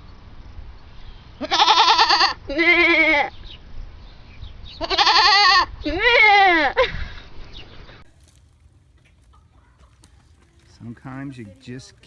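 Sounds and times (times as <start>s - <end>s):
goat bleating: 1.4s - 3.3s, 4.8s - 6.6s.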